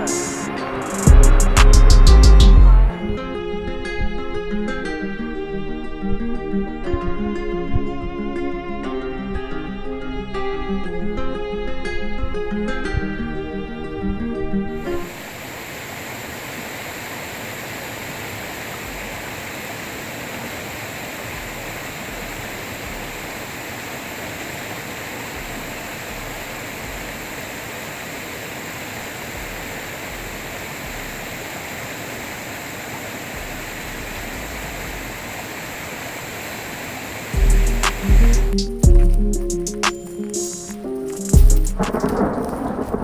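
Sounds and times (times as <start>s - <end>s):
waterfall rushing: 0.0s - 4.6s, 14.8s - 43.0s.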